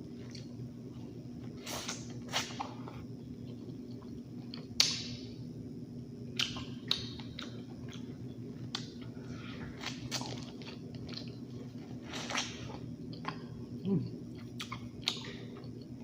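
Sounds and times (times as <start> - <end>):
person chewing with mouth smacks: 8.7 - 15.9.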